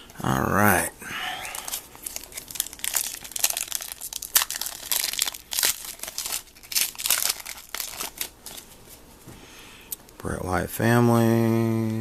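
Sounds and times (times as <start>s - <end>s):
wrapper crinkling and tearing: 1.5s - 8.8s.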